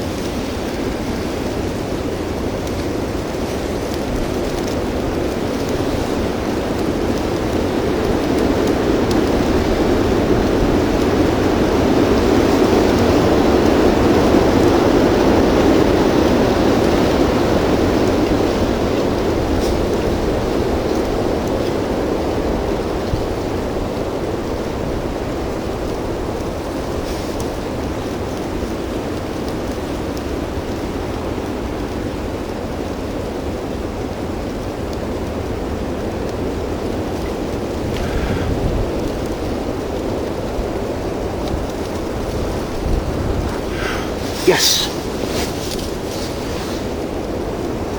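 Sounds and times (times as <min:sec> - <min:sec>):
blizzard wind buffeting microphone: 0:00.0 - 0:47.9
blizzard wind blowing: 0:33.2 - 0:47.9
wind buffeting microphone: 0:37.4 - 0:44.4.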